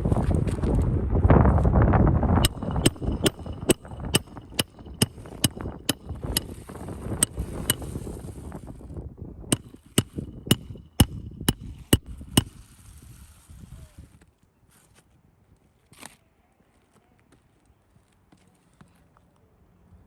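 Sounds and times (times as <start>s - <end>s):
hammer striking nails: 2.4s - 7.9s, 9.5s - 12.6s.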